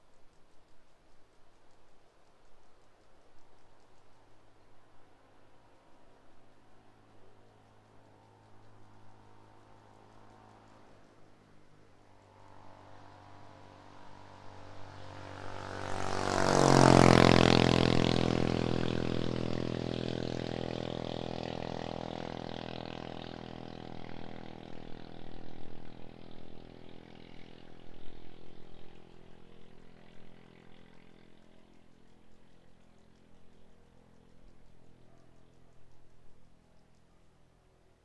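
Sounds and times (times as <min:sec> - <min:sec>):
car driving past: 0:12.2 - 0:32.1.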